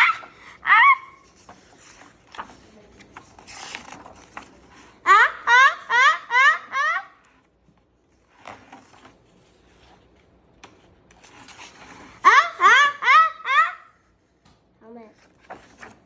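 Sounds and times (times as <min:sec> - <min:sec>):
faint clicks and rustles: 0:01.3 - 0:05.0.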